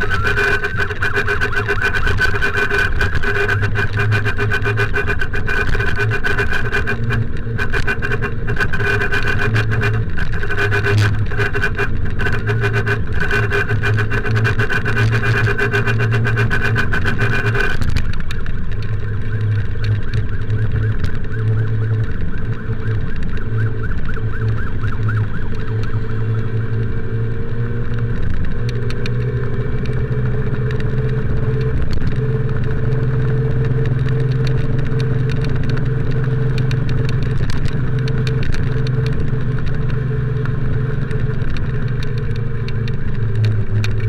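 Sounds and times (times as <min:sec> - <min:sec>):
motorcycle running: 0:00.0 - 0:44.0
wind noise on microphone: 0:00.0 - 0:44.0.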